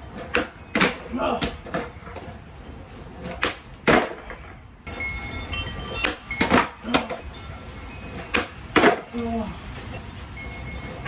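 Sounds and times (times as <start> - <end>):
skateboard clacking on pavement: 0.0 - 4.6, 5.5 - 11.0.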